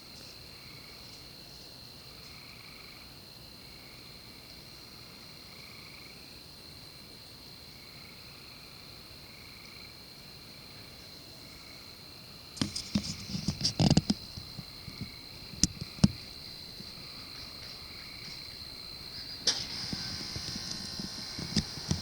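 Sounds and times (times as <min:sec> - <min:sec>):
night insects chorus: 0:00.0 - 0:22.0
sharp clicks: 0:16.8 - 0:22.0.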